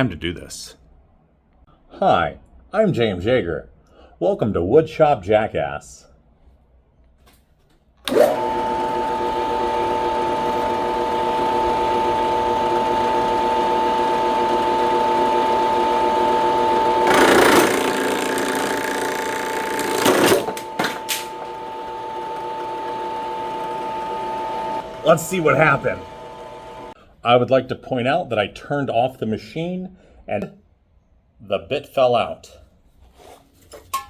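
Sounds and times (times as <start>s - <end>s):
drill bit grinding: 8.1s - 27.0s
drill whining: 8.1s - 27.0s.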